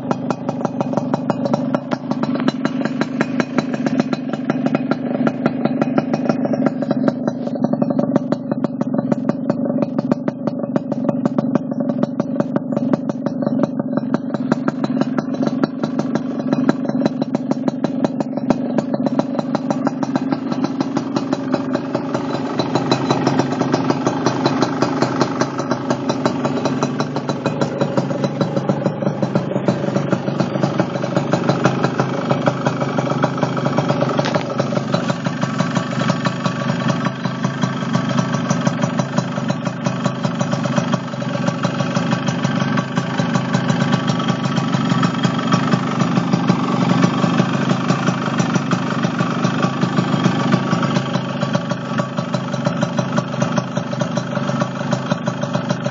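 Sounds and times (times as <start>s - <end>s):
motorcycle engine idling: 0.0s - 55.9s.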